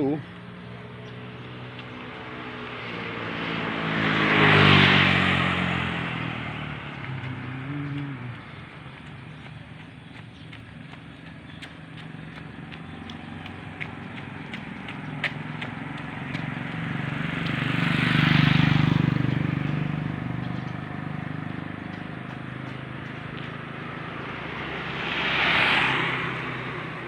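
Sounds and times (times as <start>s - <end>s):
vehicle engine hum: 0.0s - 27.0s.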